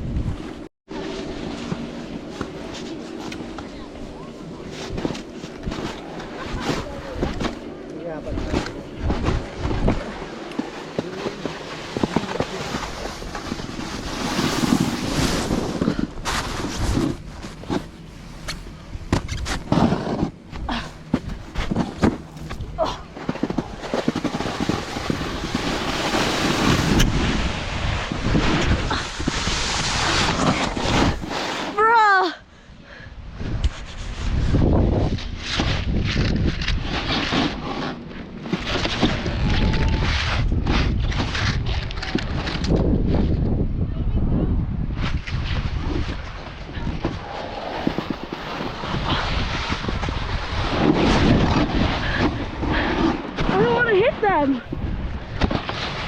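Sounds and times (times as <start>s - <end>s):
snowboard scraping over snow: 0.0s - 32.0s, 33.4s - 43.6s, 44.8s - 56.0s
wind buffeting microphone: 2.9s - 31.3s, 33.1s - 56.0s.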